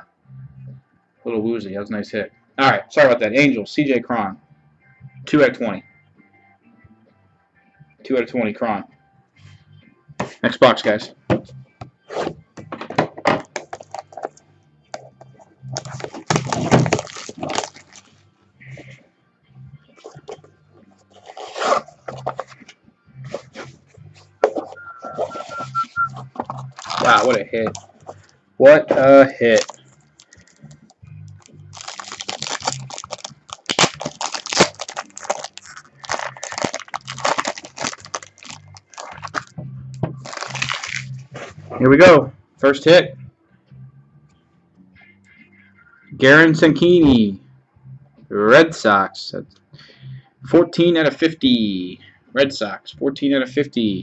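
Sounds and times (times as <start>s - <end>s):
plastic wrap and cardboard tearing: 13.6s - 14.3s, 15.8s - 18.2s, 26.4s - 27.9s, 29.4s - 30.7s, 31.3s - 39.5s, 40.2s - 41.5s.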